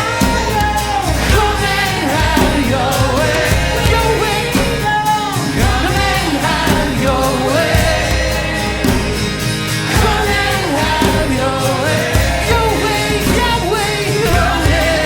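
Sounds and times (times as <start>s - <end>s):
person singing: 0.0s - 15.0s
worship band music: 0.0s - 15.0s.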